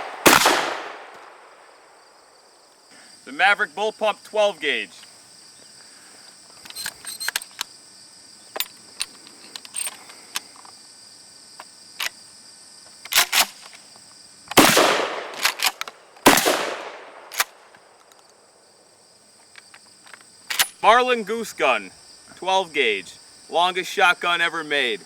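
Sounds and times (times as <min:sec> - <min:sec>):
shotgun blasts with echo: 0:00.0 - 0:01.6, 0:14.6 - 0:15.6, 0:16.2 - 0:17.5
gun handling clicks and clacks: 0:06.5 - 0:07.7, 0:08.5 - 0:10.8, 0:11.6 - 0:12.2, 0:12.8 - 0:18.4, 0:19.4 - 0:20.8.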